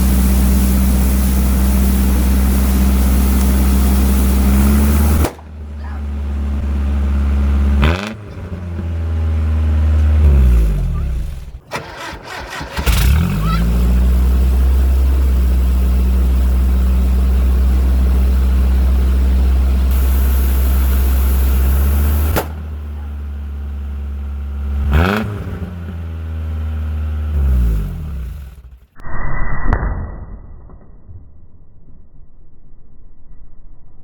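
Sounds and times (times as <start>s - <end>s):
short sharp burst: 0.0s - 6.7s, 10.2s - 23.7s
truck engine running: 0.0s - 29.0s.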